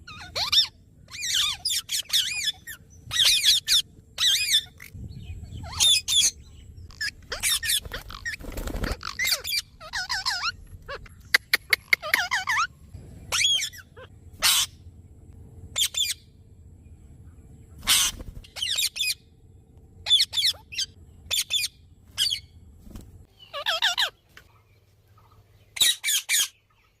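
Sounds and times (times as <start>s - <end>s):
parrot squawking and chirping: 0.0s - 14.8s, 15.7s - 16.3s, 17.8s - 19.2s, 20.0s - 22.5s, 23.3s - 24.2s, 25.8s - 26.6s.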